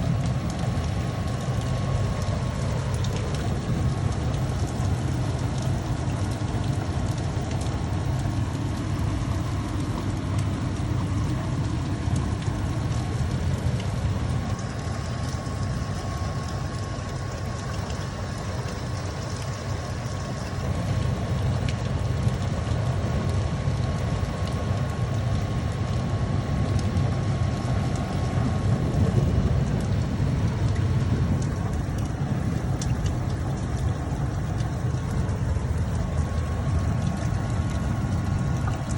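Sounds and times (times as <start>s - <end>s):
steady rain: 0.0s - 38.9s
low rumble: 27.6s - 38.9s.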